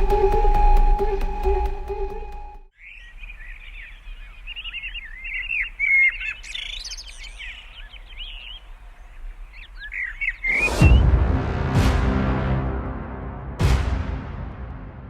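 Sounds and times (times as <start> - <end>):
birds chirping: 2.7 - 11.1.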